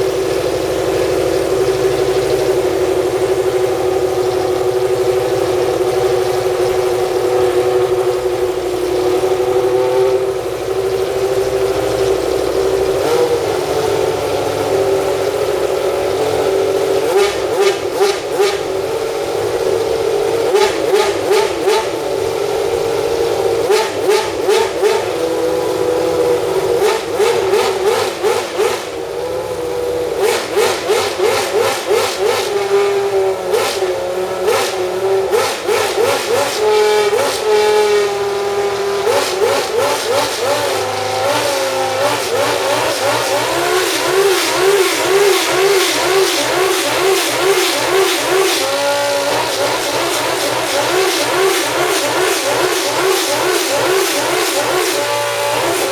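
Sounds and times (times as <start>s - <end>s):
racing car engine revving: 0.0s - 55.9s.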